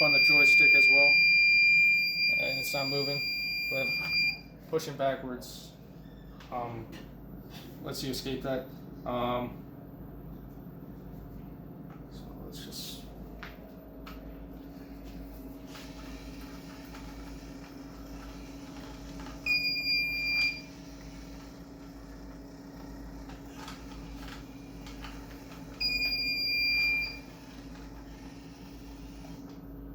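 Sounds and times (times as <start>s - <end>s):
high buzzer beeps: 0.0s - 4.4s, 19.5s - 20.8s, 25.8s - 27.3s
steady low hum: 0.0s - 29.9s.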